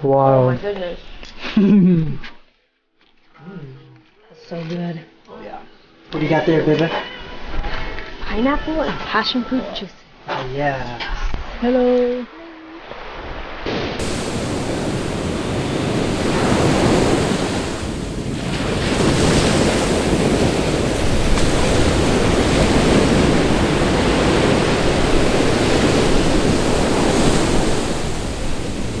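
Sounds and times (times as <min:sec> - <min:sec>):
ocean surf breaking: 0:14.0 - 0:29.0
wind buffeting microphone: 0:14.0 - 0:29.0.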